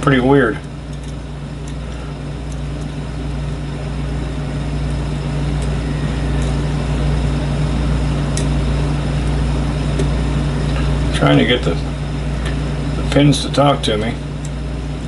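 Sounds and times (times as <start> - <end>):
mechanical hum: 0.0 - 15.0.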